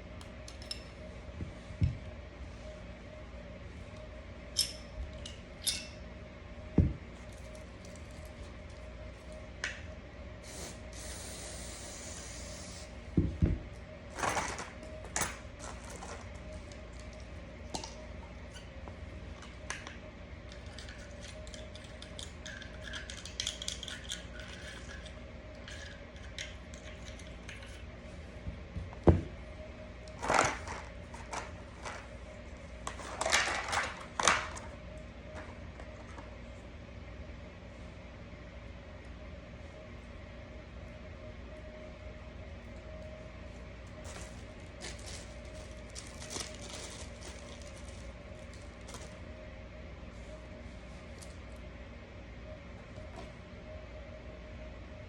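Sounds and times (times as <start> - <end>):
faint steady hum: 0.0 - 55.0
spray hiss: 10.4 - 12.9.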